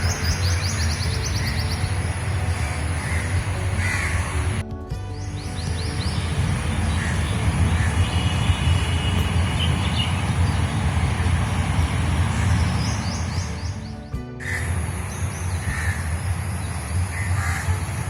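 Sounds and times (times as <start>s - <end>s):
bird chirps: 0.0s - 4.6s, 5.2s - 18.0s
repeated bird calls: 0.0s - 4.6s, 5.2s - 18.0s
low steady rumble: 0.0s - 18.0s.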